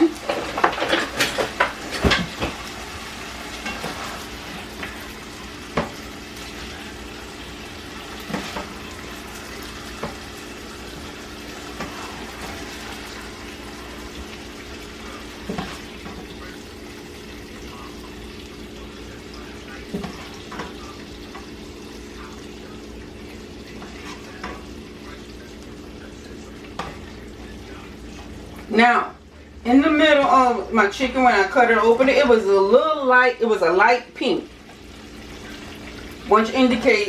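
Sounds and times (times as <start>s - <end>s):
chicken sizzling in a pan: 0.0s - 37.0s
utensil clattering against pan: 0.2s - 2.6s.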